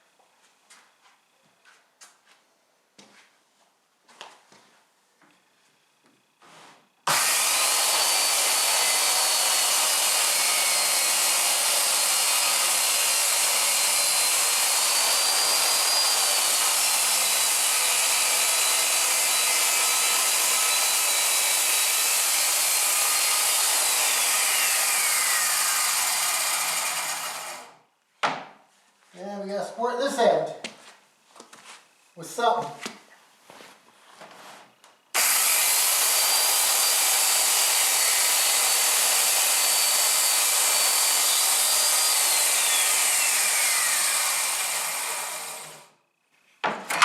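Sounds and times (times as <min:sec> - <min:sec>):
circular saw cutting plywood: 0:06.6 - 0:27.8, 0:35.2 - 0:45.9
saw blade winding down: 0:07.1 - 0:27.8, 0:35.2 - 0:45.9.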